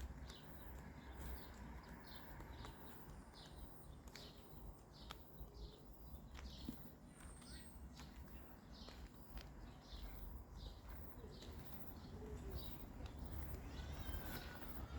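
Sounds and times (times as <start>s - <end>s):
small bird chirping: 0.0s - 14.9s.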